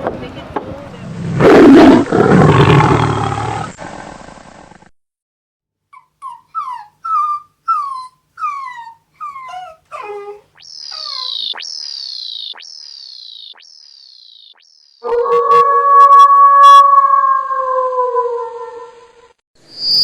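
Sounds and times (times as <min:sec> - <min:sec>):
loud animal roar: 0:01.1 - 0:04.7.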